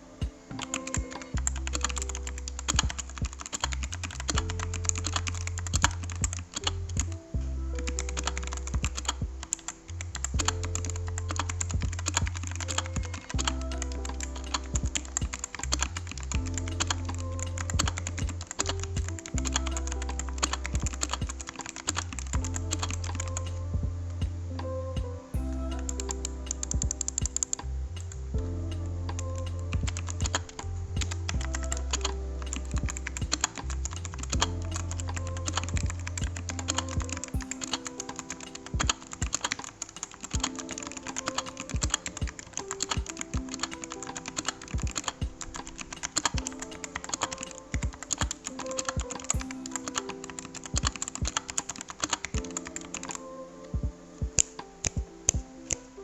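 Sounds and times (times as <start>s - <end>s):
background music with heavy bass: 0.0s - 56.0s
mechanical keyboard typing: 34.8s - 53.2s.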